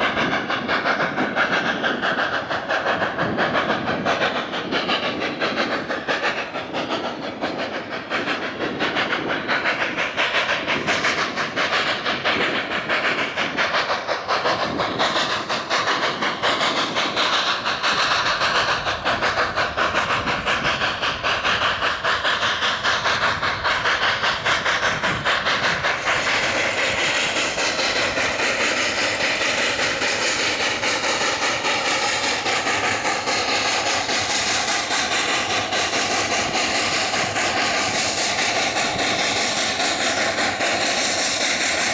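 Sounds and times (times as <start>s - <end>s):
steam hiss: 0.0s - 41.9s
locomotive exhaust: 14.6s - 41.9s.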